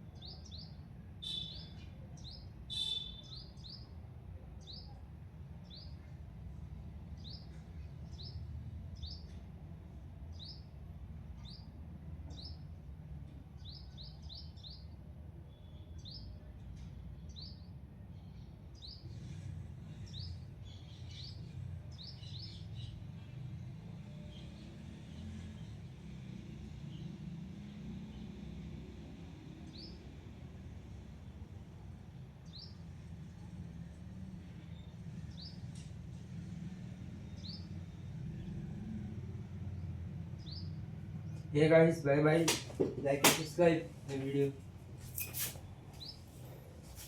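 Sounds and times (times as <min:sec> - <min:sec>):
small bird chirping: 0:00.1 - 0:03.9
harsh bird call: 0:02.7 - 0:03.5.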